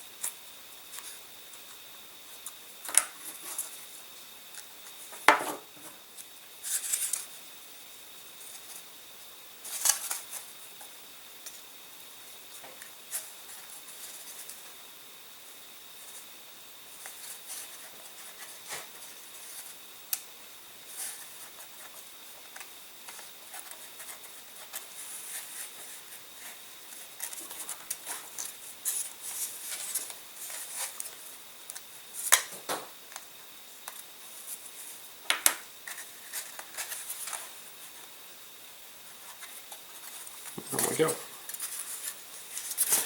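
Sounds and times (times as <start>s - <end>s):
small parts scraping and rustling: 6.6s - 7.3s, 39.1s - 43.0s.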